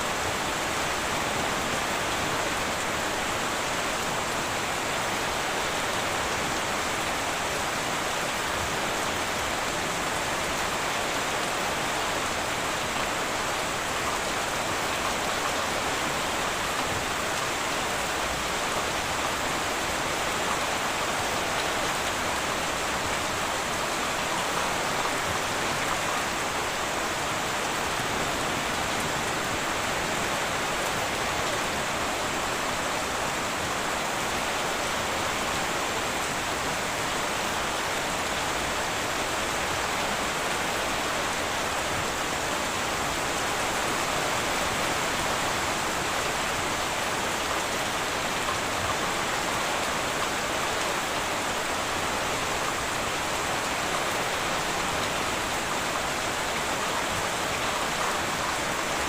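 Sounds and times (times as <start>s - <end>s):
heavy rain on a tin roof: 0.0s - 59.0s.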